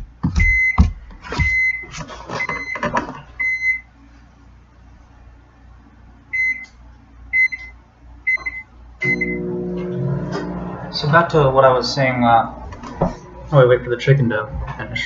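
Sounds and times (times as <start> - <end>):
microwave humming: 0.0 - 15.0
microwave beeping: 0.3 - 3.9, 6.3 - 13.4.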